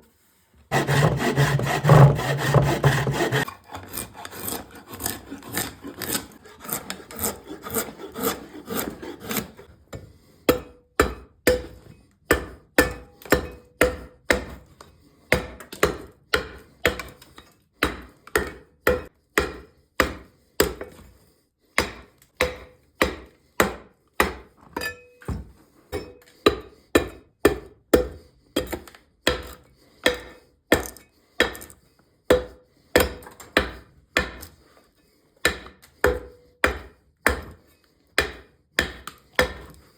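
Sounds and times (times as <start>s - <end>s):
sharp ringing strokes on wood: 0.7s - 3.5s
saw rasping on wood: 0.7s - 9.7s, 15.3s - 21.2s, 26.0s - 34.8s, 35.4s - 39.9s.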